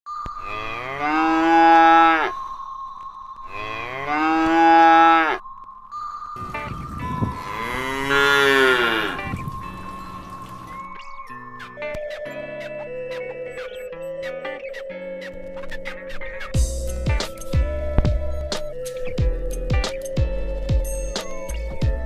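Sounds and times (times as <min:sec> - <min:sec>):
steady high tone: 0:00.1 - 0:22.0
cow mooing: 0:00.4 - 0:02.4, 0:03.5 - 0:05.4, 0:07.4 - 0:09.4.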